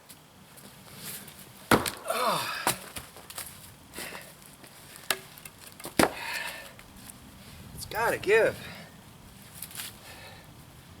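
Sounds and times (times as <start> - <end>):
person groaning: 2.0 - 2.7.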